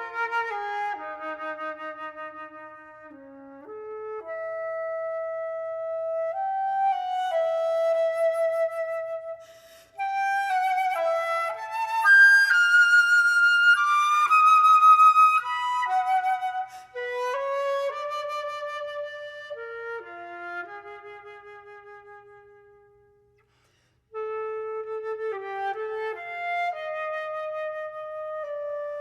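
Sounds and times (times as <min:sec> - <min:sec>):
solo flute melody: 0:00.0 - 0:23.4, 0:24.0 - 0:29.0
breath: 0:09.4 - 0:10.0, 0:16.7 - 0:17.0, 0:23.4 - 0:24.1.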